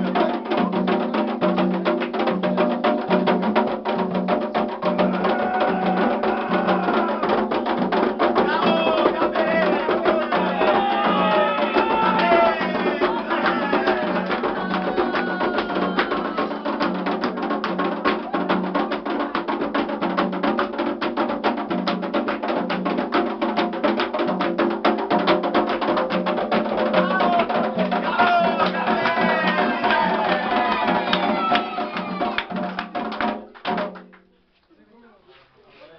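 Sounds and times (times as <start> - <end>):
fast dense drumming: 0.0 - 34.0
clicking wood-block beat: 0.0 - 34.2
voices singing: 4.8 - 19.3, 26.9 - 33.0.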